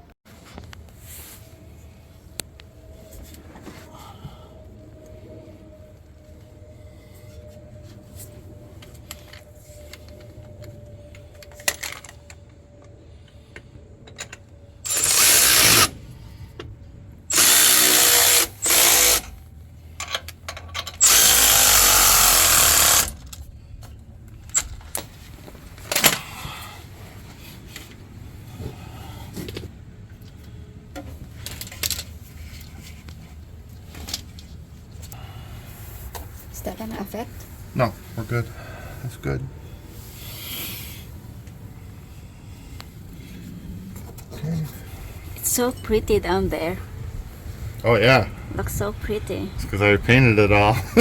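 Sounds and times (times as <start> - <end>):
power tool driving bolts: 14.9 - 16.0, 17.3 - 19.4, 20.7 - 23.4.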